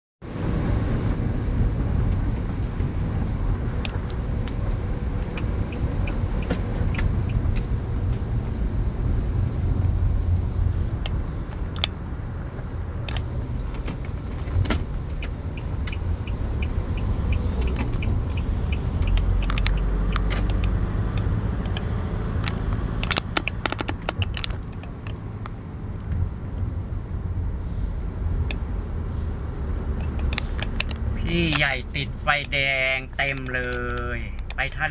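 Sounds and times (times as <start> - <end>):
vehicle engine and road rumble: 0.2 - 34.9.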